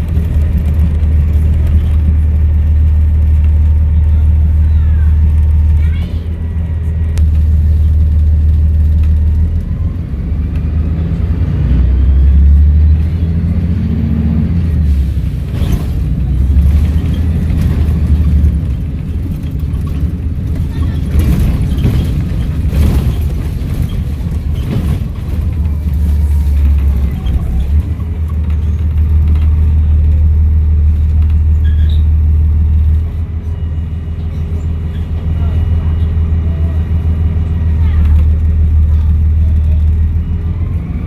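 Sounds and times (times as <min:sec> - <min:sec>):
engine knocks: 0:00.0 - 0:06.1, 0:14.4 - 0:33.2
bus engine droning: 0:00.0 - 0:41.0.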